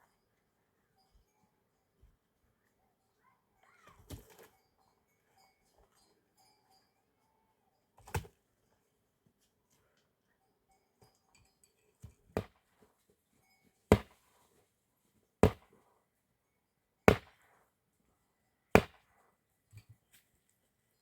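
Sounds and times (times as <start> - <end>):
axe chopping wood: 12.4 - 12.6, 13.9 - 14.2, 15.4 - 15.8, 17.1 - 17.5, 18.8 - 19.1.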